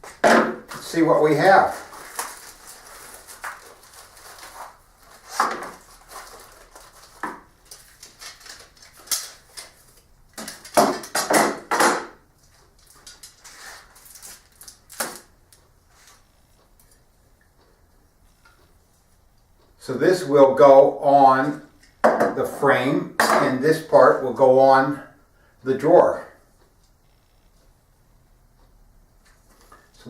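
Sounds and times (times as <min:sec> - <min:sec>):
packaging rustling: 0:00.7 - 0:11.2, 0:12.8 - 0:15.3.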